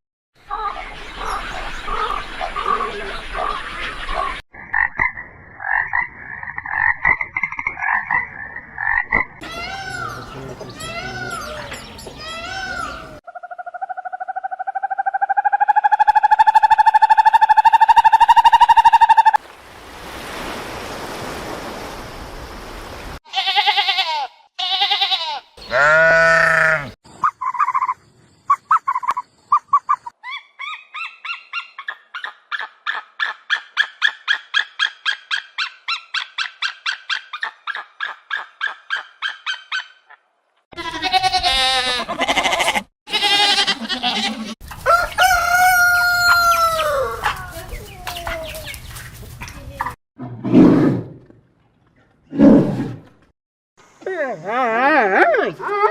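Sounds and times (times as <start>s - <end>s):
pitched animal calls: 9.4s - 19.4s, 23.4s - 40.2s, 40.8s - 44.6s
chickens clucking: 43.8s - 50.0s
rooster crowing: 44.8s - 47.4s.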